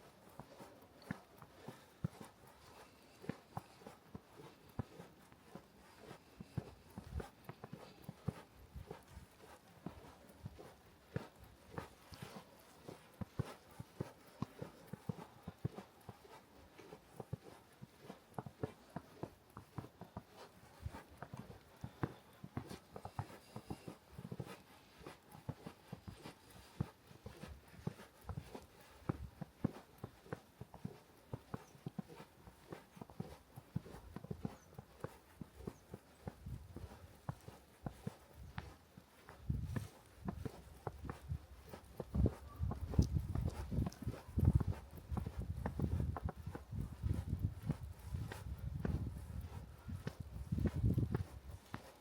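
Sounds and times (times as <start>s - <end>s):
footsteps crunching in snow: 0.0s - 52.0s
wind thumps on microphone: 39.5s - 40.4s, 42.0s - 51.5s.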